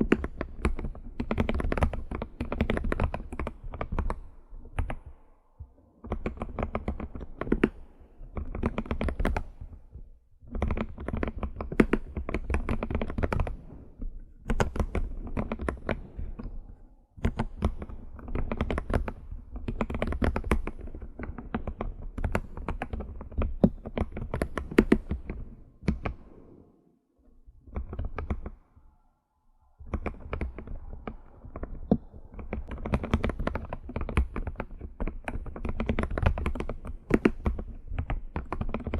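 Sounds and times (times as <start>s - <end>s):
computer keyboard typing: 0.0s - 5.1s, 10.5s - 13.6s, 14.5s - 16.5s, 17.2s - 26.2s, 29.8s - 38.9s.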